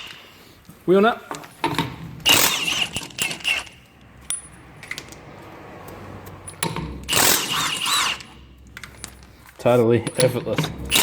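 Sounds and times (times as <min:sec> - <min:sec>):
impact wrench hammering: 0:01.6 - 0:05.1, 0:06.4 - 0:09.2, 0:10.0 - 0:11.0.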